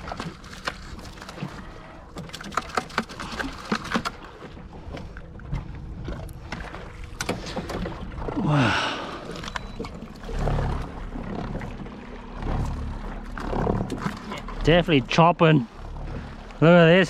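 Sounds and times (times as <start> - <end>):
steady low rumble: 4.2 - 17.0.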